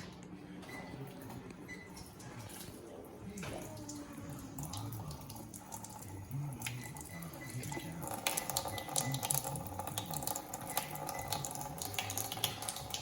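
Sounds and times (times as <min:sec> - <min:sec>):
tap water running into sink: 0:03.4 - 0:13.0.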